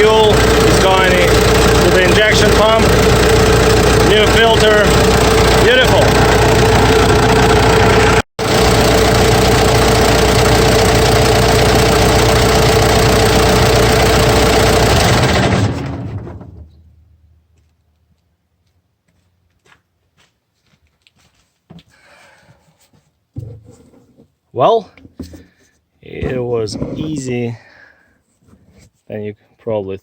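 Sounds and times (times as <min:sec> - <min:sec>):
diesel engine idling: 0:00.0 - 0:16.8.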